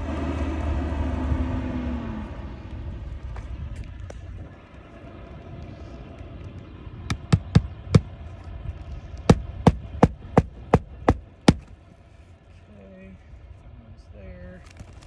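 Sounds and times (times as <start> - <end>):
hammer striking roofing nails: 7.1 - 8.2, 9.3 - 11.7.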